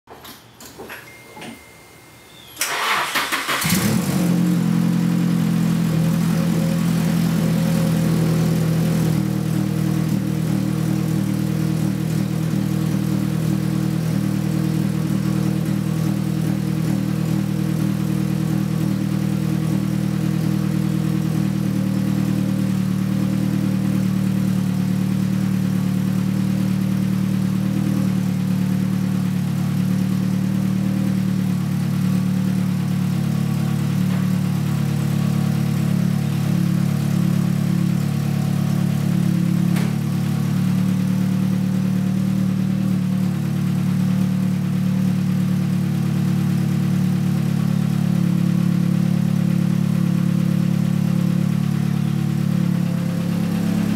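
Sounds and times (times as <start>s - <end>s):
engine starter cranking: 2.6s - 4.0s
car engine idling: 2.7s - 53.9s.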